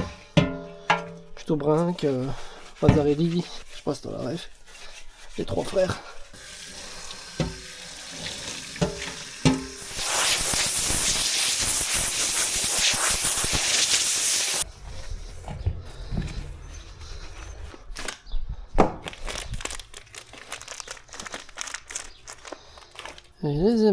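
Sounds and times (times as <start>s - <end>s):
aerosol spray hiss: 9.7s - 14.7s.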